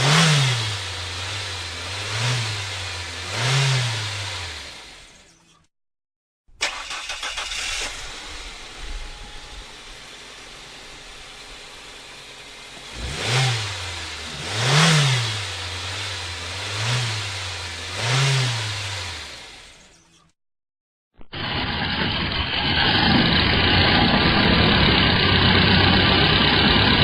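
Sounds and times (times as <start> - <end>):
car engine idling: 0.0 - 3.4, 6.6 - 18.1
engine revving: 0.0 - 5.4, 6.6 - 20.0, 21.4 - 27.0
starter motor cranking: 6.6 - 8.6.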